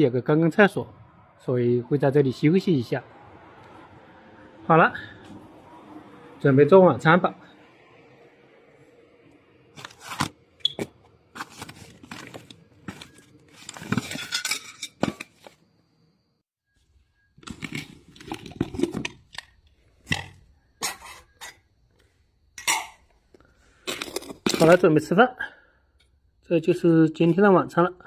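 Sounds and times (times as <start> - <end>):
scraping and rustling: 9.7 - 15.6.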